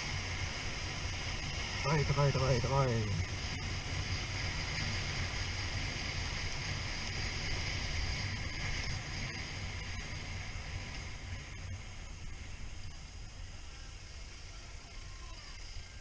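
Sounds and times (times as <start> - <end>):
motorcycle engine drone: 0.0 - 16.0
wind rushing over microphone: 0.0 - 16.0.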